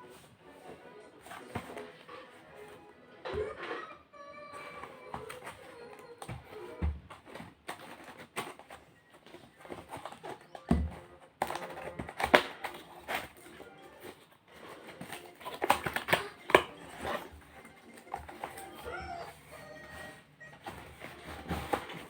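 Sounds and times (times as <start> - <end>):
packaging handled by hand: 4.5 - 22.0.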